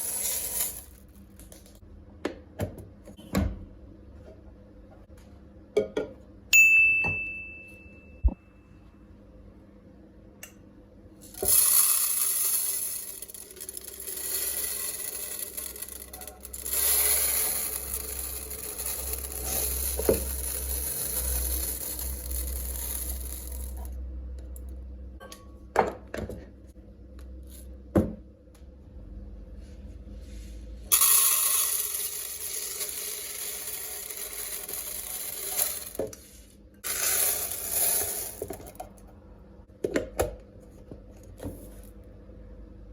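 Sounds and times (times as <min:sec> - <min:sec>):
pulses rattling into glass jars: 0:11.3 - 0:23.9, 0:30.9 - 0:36.0, 0:36.8 - 0:38.8.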